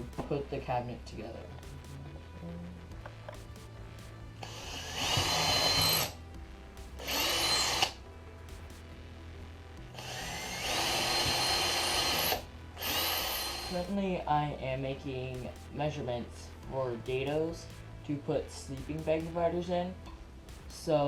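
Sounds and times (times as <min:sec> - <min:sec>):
power drill boring holes: 0:04.4 - 0:06.2, 0:07.0 - 0:08.0, 0:10.0 - 0:13.9.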